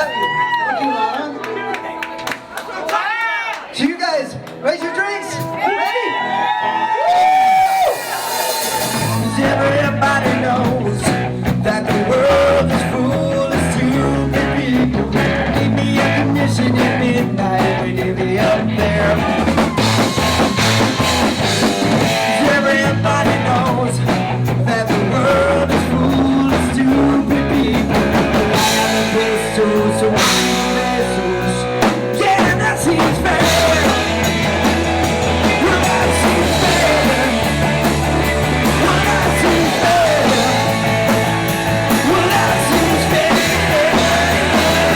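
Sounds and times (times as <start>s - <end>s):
electric guitar: 5.3s - 44.9s
drum kit: 7.0s - 44.9s
bass line: 7.2s - 44.9s.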